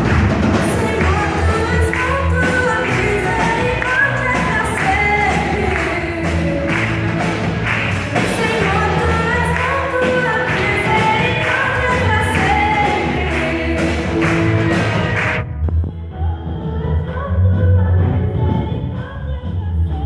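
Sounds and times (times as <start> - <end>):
drums and cymbals: 0.0 - 15.4
worship band playing: 0.0 - 15.6
person singing: 0.5 - 7.4, 8.0 - 20.0.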